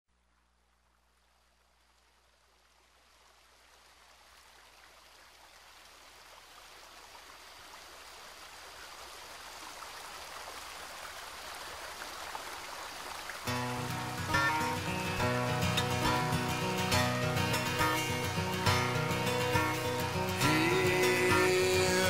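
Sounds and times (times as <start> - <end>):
rushing water: 0.9 - 22.0.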